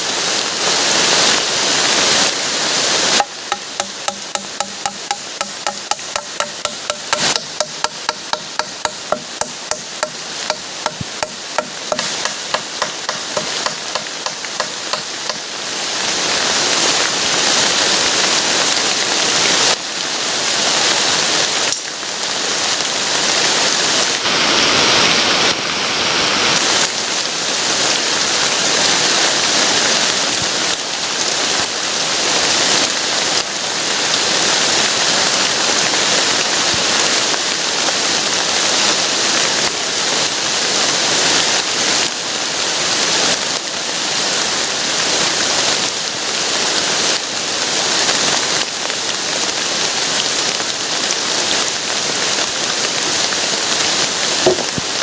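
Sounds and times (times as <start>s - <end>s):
heavy rain: 0.0s - 55.0s
rhythmic ringing knocks: 3.2s - 15.5s.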